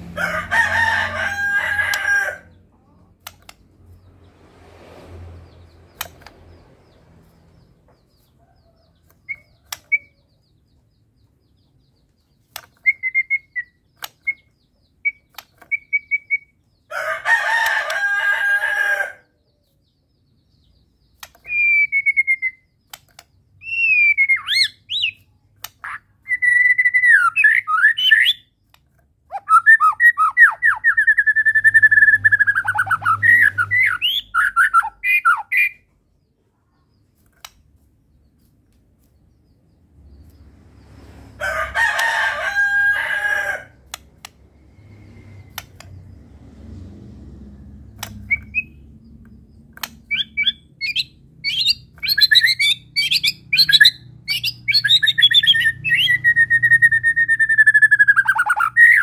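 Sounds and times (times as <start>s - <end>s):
songbird chirps and clicks: 0.1s - 59.0s
gliding whistled bird song: 5.1s - 16.8s, 20.2s - 28.6s, 29.3s - 36.0s, 44.4s - 46.8s, 47.6s - 59.0s.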